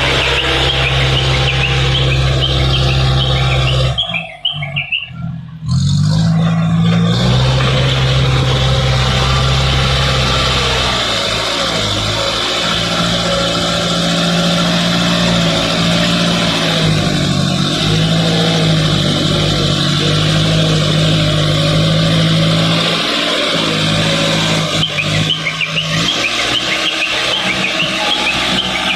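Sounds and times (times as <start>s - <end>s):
diesel engine revving: 0.0s - 28.9s.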